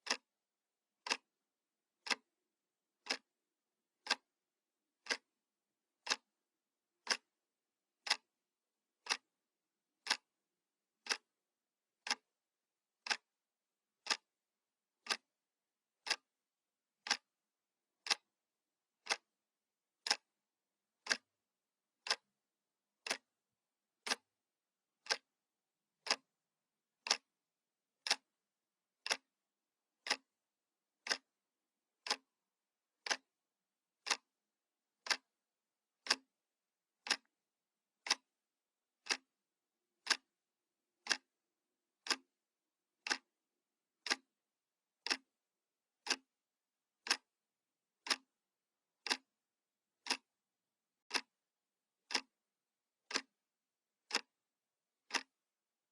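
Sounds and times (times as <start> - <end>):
analog clock ticking: 3.0 - 3.2, 4.0 - 4.2, 13.0 - 13.2, 15.0 - 15.2, 17.0 - 17.3, 18.0 - 18.3, 19.0 - 19.2, 20.0 - 20.3, 21.0 - 21.3, 22.0 - 22.2, 24.0 - 24.2, 25.0 - 25.2, 26.0 - 26.3, 27.0 - 27.3, 28.0 - 28.3, 29.0 - 29.3, 30.0 - 30.3, 31.0 - 31.3, 32.0 - 32.3, 33.0 - 33.3, 34.0 - 34.3, 35.0 - 35.3, 36.0 - 36.2, 37.0 - 37.3, 38.0 - 38.2, 39.0 - 39.3, 40.0 - 40.2, 41.0 - 41.3, 42.0 - 42.2, 43.0 - 43.3, 44.0 - 44.2, 45.0 - 45.3, 46.0 - 46.2, 47.0 - 47.3, 48.0 - 48.3, 49.0 - 49.3, 50.0 - 50.3, 51.1 - 51.3, 52.1 - 52.3, 53.1 - 53.3, 54.1 - 54.3, 55.1 - 55.3.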